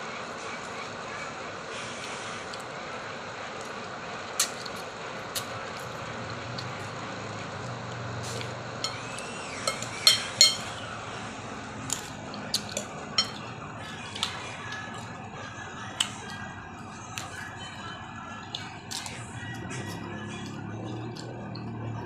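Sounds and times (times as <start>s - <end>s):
steady background noise: 0.0s - 22.0s
spoon clinking on dish: 8.8s - 10.8s, 11.9s - 13.6s.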